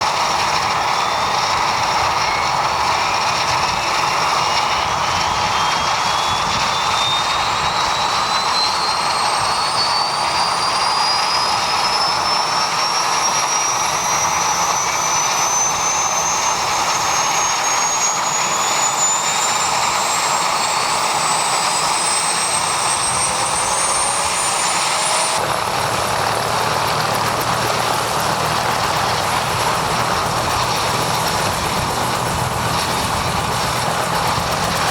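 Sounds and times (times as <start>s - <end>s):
helicopter turbine whine: 0.0s - 34.9s
engine noise rush: 19.4s - 34.9s
low engine rumble: 25.3s - 34.9s.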